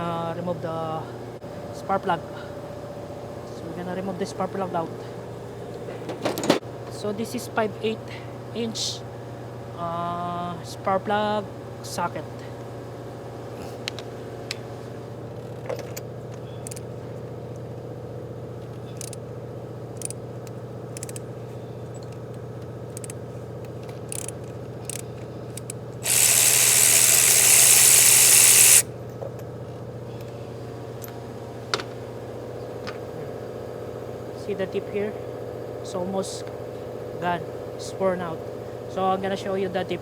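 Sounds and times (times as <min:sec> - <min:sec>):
steady background hum: 0:00.0 - 0:40.0
ratchet clicking and tapping: 0:19.0 - 0:19.2, 0:19.9 - 0:21.2, 0:22.9 - 0:23.2, 0:24.1 - 0:28.9.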